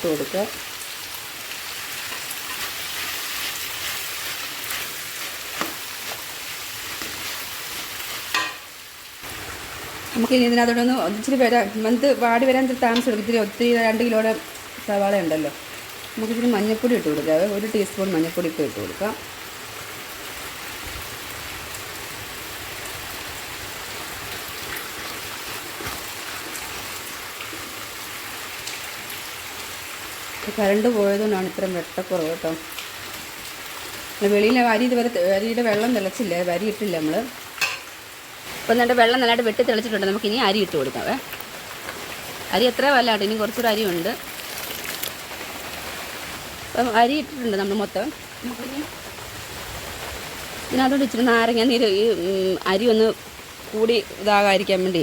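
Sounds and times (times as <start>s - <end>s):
onions sizzling in a pan: 0.0s - 54.8s
heavy rain falling: 0.0s - 55.0s.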